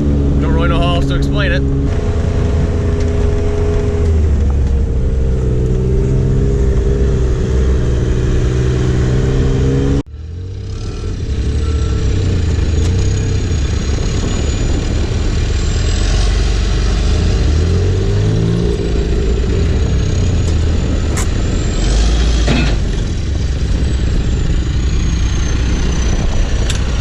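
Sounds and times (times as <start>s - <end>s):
backhoe diesel engine running: 10.1s - 27.0s.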